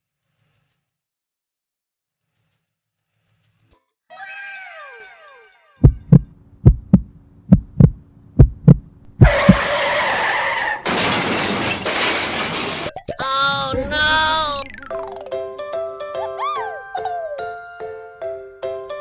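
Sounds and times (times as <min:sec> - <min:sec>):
heartbeat thumps: 0:05.8 - 0:09.7.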